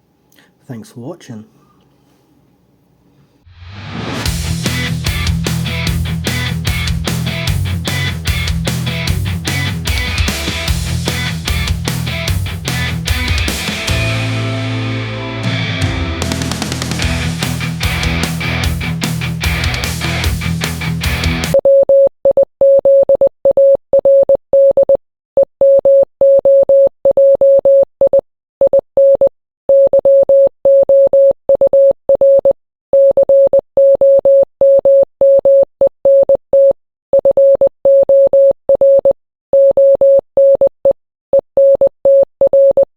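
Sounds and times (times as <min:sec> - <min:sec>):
heavy rock music: 0:04.0 - 0:21.6
morse code beeps: 0:21.5 - 0:42.9.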